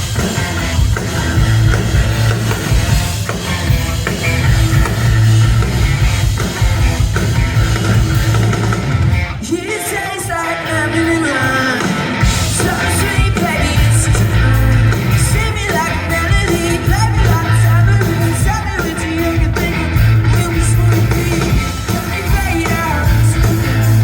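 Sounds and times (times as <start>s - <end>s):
live rock band playing: 0.0s - 24.0s
person singing lead vocal: 9.4s - 24.0s.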